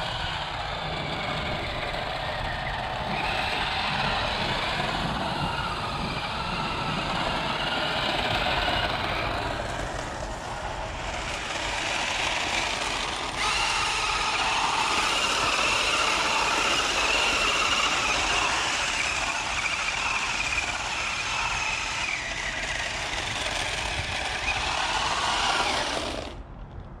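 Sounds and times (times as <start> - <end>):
toy car electric motor whining: 0.0 - 26.4.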